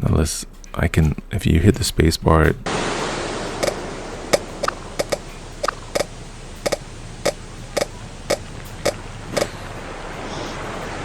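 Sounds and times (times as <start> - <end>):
steady rushing hiss: 2.6 - 11.0.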